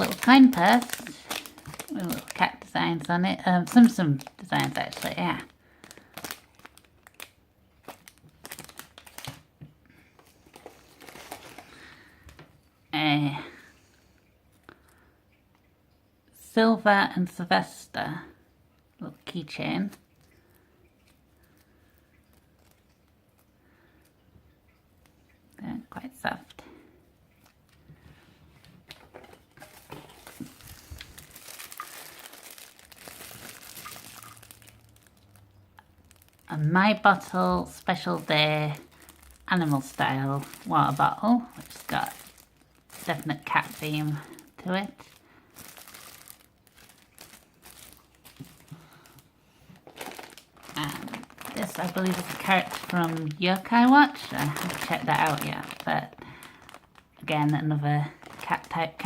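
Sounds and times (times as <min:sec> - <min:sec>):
plastic packaging crinkling: 0:00.0 - 0:12.6, 0:21.0 - 0:23.5, 0:28.7 - 0:59.0.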